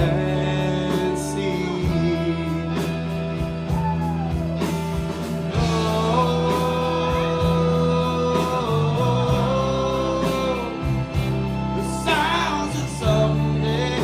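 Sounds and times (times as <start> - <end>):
live rock band playing: 0.0 - 14.0.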